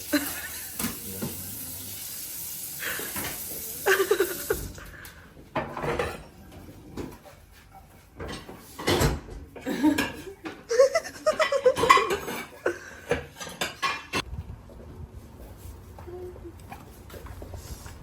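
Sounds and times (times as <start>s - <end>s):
voices and laughter: 3.6s - 4.8s
dishes and cutlery clinking: 5.5s - 14.3s.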